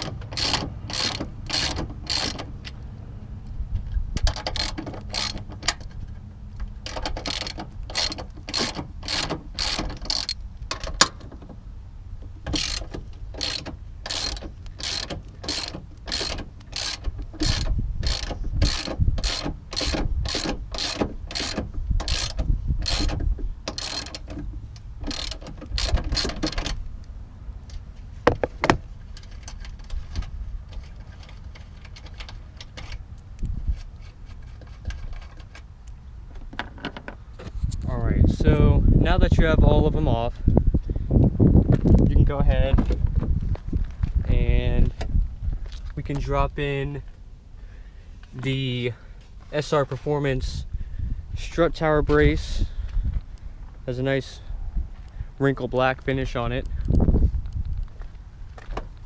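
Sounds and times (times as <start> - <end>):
hand ratchet clicking: 0.0 - 2.5, 4.2 - 5.8, 6.9 - 10.4, 12.5 - 26.7.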